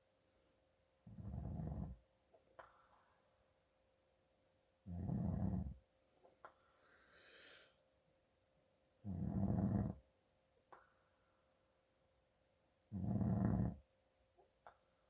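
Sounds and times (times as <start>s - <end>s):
man snoring: 1.1s - 2.0s, 4.9s - 5.8s, 9.0s - 10.0s, 12.9s - 13.8s.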